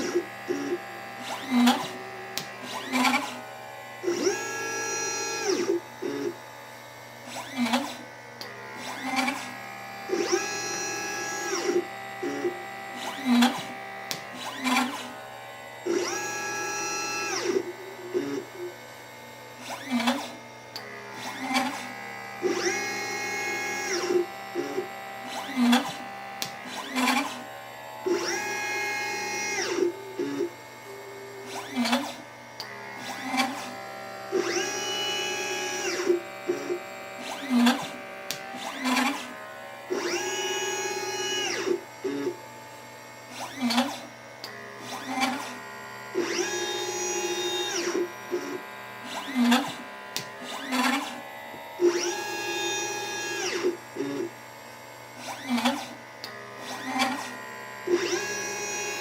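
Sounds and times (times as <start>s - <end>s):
stepper motors whining: 0.0s - 59.0s
sharp machine clicks: 23.8s - 27.5s, 35.5s - 42.3s, 46.2s - 51.2s.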